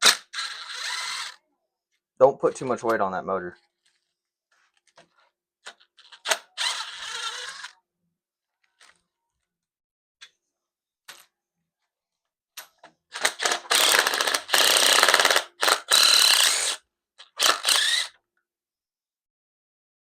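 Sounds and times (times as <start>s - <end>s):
ratchet wrench clicking: 13.2s - 16.8s, 17.4s - 18.1s.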